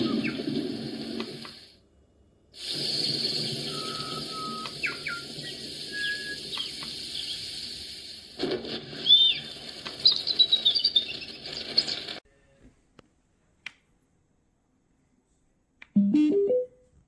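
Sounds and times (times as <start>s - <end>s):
birds chirping and whistling: 0.0s - 0.6s, 3.4s - 7.6s, 9.0s - 12.2s.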